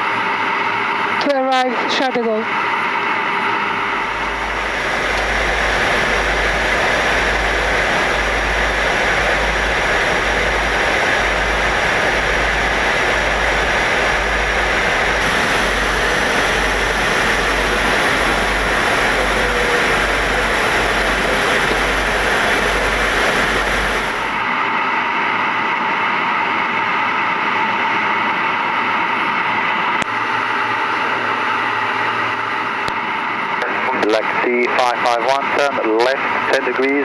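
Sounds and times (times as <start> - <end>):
airplane in flight rushing: 0.0 - 37.0
low rumble: 3.8 - 24.5.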